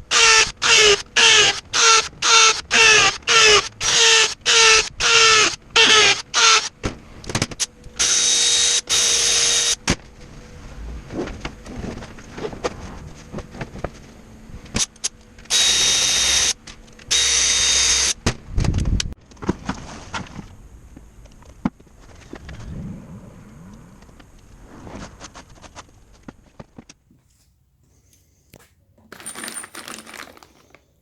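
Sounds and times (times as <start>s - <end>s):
clicks and knocks of handling: 28.5s - 31.0s.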